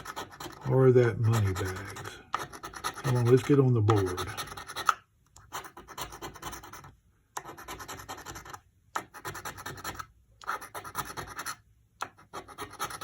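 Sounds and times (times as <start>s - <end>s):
scratching lottery ticket: 0.0s - 13.0s.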